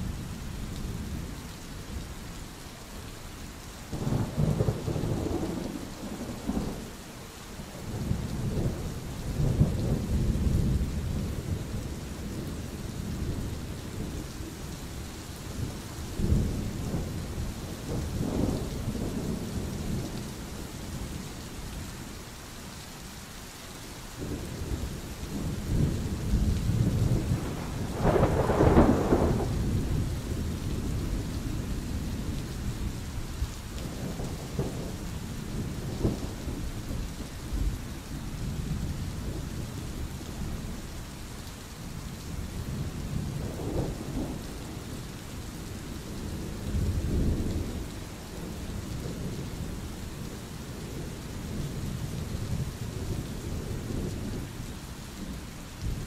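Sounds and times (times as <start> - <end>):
rain hissing: 0.0 - 56.0
low rolling thunder: 3.9 - 7.0, 7.7 - 14.7, 15.5 - 21.2, 24.2 - 40.9, 42.0 - 56.0
sharp thunderclap: 26.7 - 30.5.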